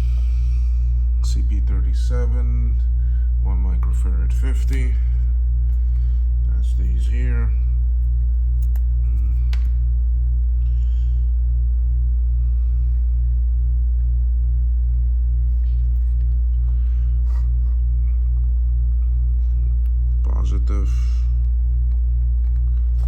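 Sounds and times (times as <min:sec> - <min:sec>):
air conditioner humming: 0:00.0 - 0:23.0.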